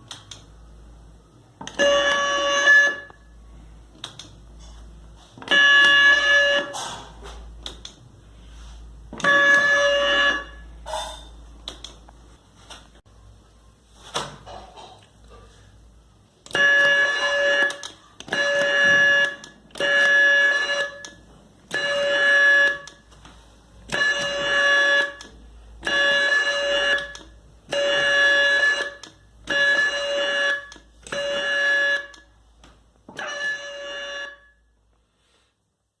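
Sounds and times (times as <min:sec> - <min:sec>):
electronic buzzer: 0:01.7 - 0:03.4, 0:05.4 - 0:06.8, 0:09.2 - 0:11.2, 0:16.5 - 0:23.1, 0:23.9 - 0:32.3, 0:33.1 - 0:34.6.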